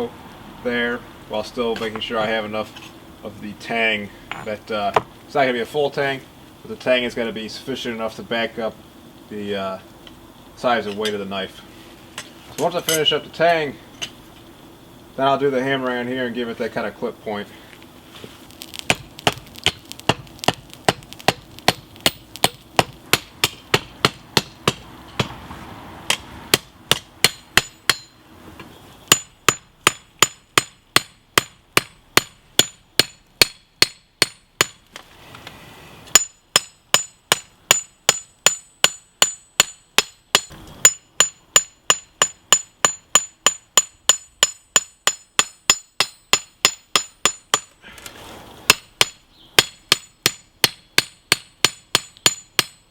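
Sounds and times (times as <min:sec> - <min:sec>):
steady hum: 0:00.0 - 0:52.9
hammer striking hot steel on anvil: 0:18.6 - 0:25.3, 0:26.1 - 0:28.2, 0:29.1 - 0:34.8, 0:36.1 - 0:47.8, 0:48.7 - 0:52.9.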